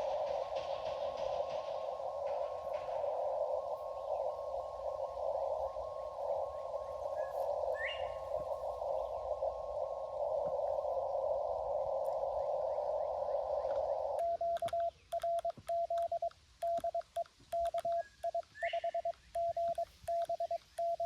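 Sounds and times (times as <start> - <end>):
radio receiver hiss: 0.0 - 21.0
faint morse code tones: 10.3 - 21.0.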